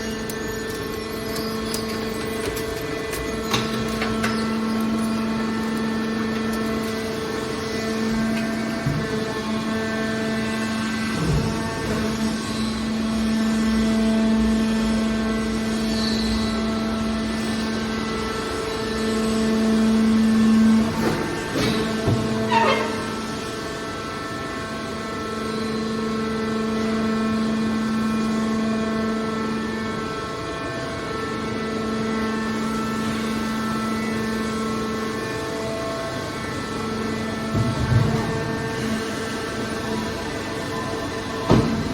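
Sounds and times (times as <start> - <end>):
baler machine humming: 0.0 - 24.6
pump whine: 0.0 - 41.9.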